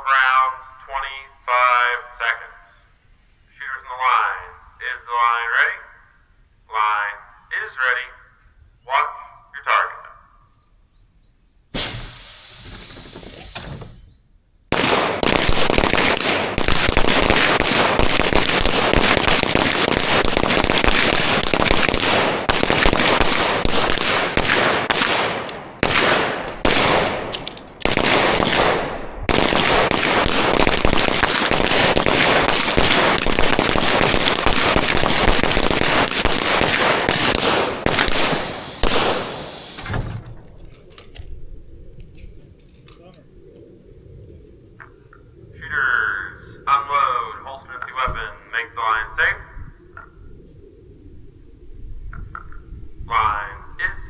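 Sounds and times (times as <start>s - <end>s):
pistols firing: 14.7s - 39.8s.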